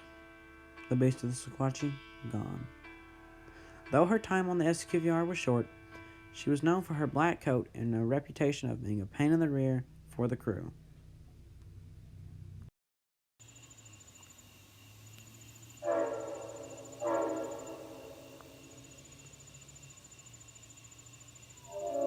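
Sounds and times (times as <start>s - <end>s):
crickets chirping: 13.4s - 22.0s
diesel locomotive horn blasts: 15.8s - 18.8s, 21.6s - 22.0s.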